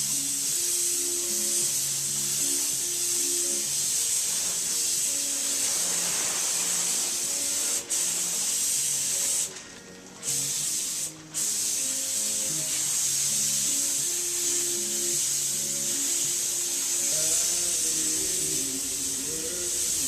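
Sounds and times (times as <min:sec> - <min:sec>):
paint spray gun hissing: 0:00.0 - 0:20.0.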